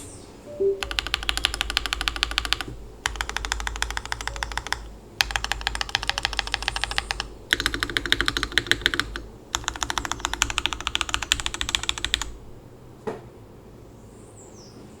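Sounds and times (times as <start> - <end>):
mechanical keyboard typing: 0.8 - 12.4.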